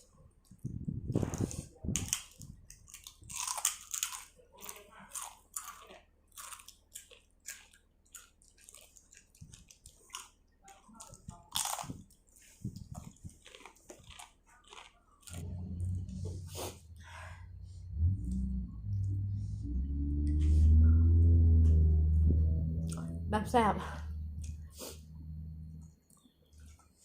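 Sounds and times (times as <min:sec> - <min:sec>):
person chewing crunchy food: 0:01.2 - 0:17.4
low steady hum: 0:15.3 - 0:27.0.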